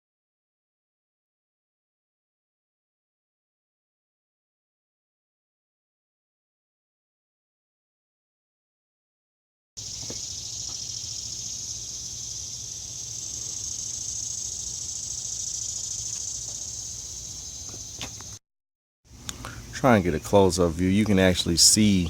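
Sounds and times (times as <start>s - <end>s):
high-pitched insect chorus: 9.8s - 18.4s.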